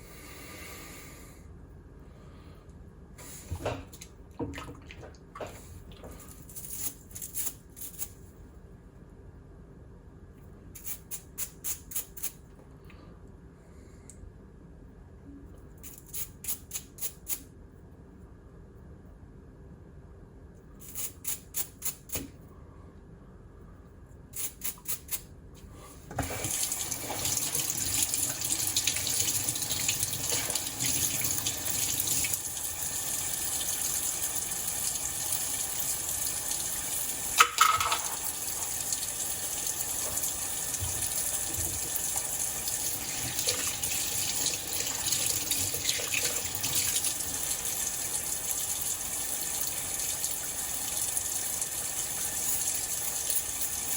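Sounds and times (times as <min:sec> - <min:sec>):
sink faucet running: 0:26.1 - 0:53.9.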